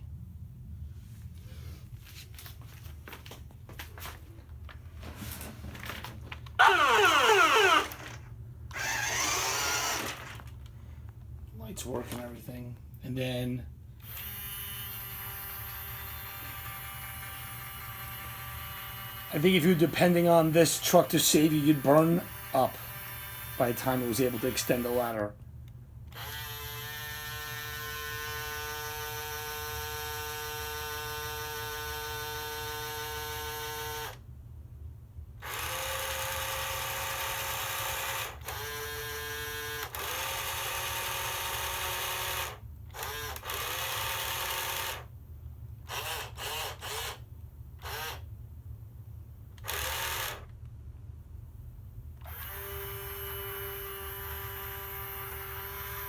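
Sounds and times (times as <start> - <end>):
toy electric motors whining: 6.5 - 10.7, 14.0 - 25.2, 26.1 - 34.2, 35.4 - 45.1, 45.9 - 47.2, 47.8 - 48.3, 49.6 - 50.5, 52.2 - 56.0.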